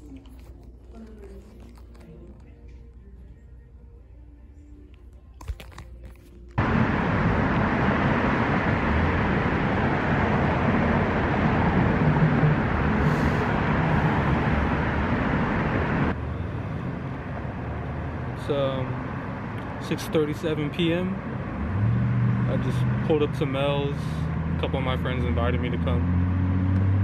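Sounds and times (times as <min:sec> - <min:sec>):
wind rush: 0:06.6 - 0:16.2.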